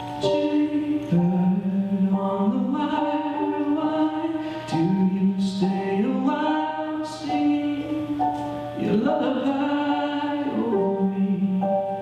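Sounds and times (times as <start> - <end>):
slow melody of long notes: 0.0 - 12.0.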